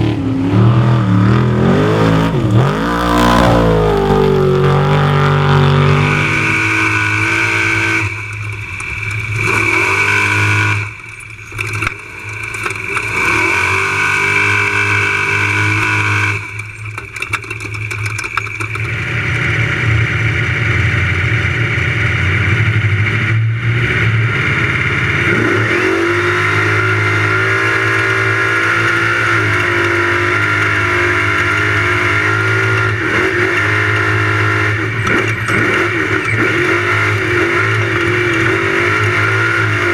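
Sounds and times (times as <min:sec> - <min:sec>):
truck engine revving: 0:00.0 - 0:08.2, 0:24.4 - 0:39.9.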